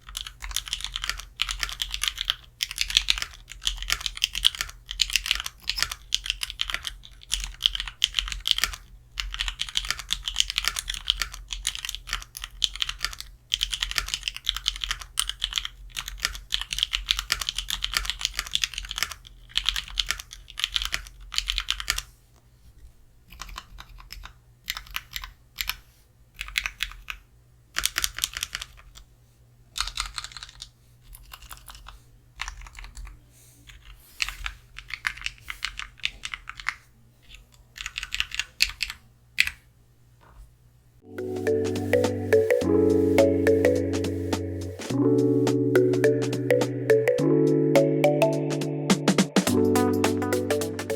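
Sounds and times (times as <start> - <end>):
mechanical keyboard typing: 0.0 - 22.1, 23.3 - 25.8, 26.4 - 27.2, 27.8 - 29.0, 29.8 - 33.1, 33.7 - 36.8, 37.8 - 39.6.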